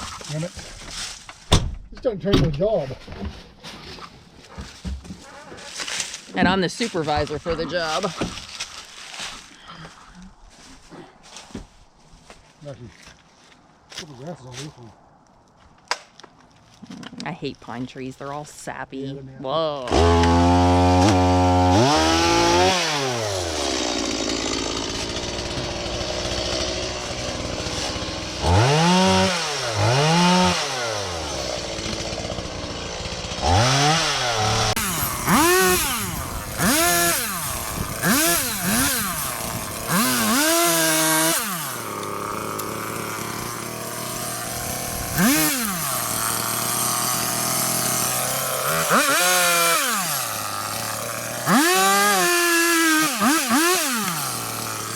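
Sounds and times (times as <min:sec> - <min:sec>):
chainsaw revving and idling: 0:19.8 - 0:54.9.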